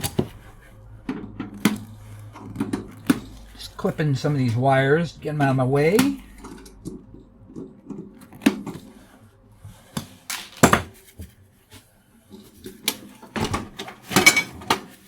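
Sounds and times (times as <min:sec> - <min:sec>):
metal tools clinking on workbench: 0:14.0 - 0:14.8.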